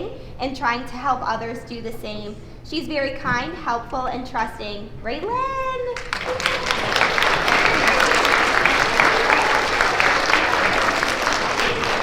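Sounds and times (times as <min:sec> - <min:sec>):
audience applauding: 0:06.0 - 0:12.0.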